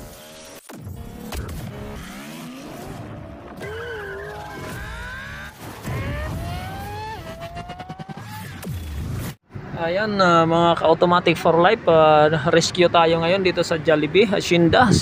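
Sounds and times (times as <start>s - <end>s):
car engine accelerating: 0.0s - 9.4s
tyre squeals: 3.6s - 7.6s.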